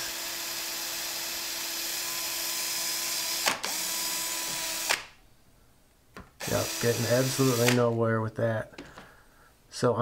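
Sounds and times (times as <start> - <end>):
electric drill grinding against steel: 0.0 - 5.1, 6.4 - 7.8.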